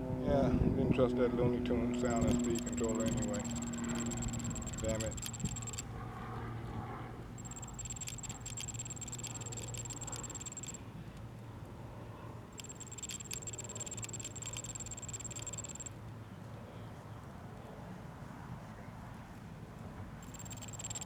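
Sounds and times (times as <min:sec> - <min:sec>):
low hum: 0:00.0 - 0:11.0, 0:12.5 - 0:16.0, 0:20.2 - 0:21.0
electric motor whining and stuttering: 0:01.9 - 0:05.8.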